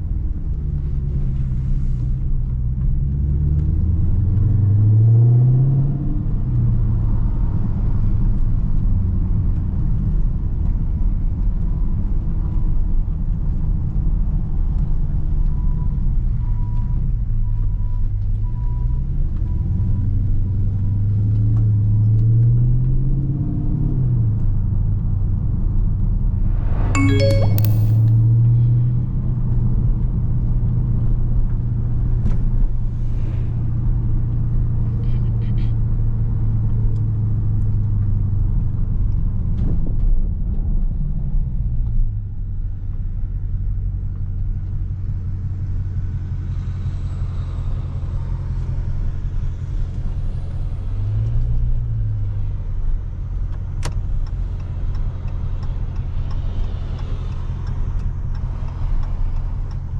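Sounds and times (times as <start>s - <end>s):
sharp click: 27.0s - 28.2s.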